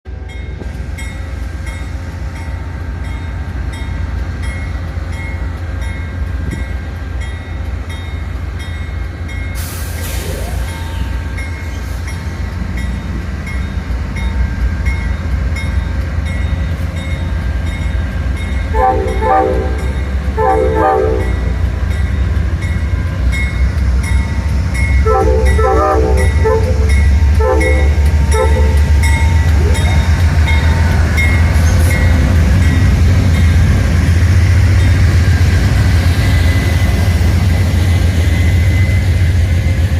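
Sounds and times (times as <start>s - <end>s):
diesel locomotive engine rumble: 0.0s - 39.9s
train horn blasts: 18.7s - 21.6s, 25.0s - 29.1s.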